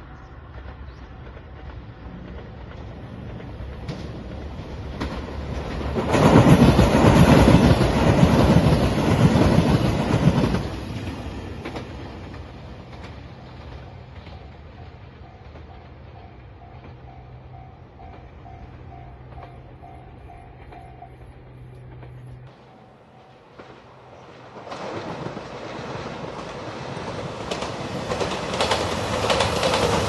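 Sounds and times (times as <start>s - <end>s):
train wheels clattering over rails: 0.2s - 30.0s
level crossing warning bell: 14.4s - 24.2s.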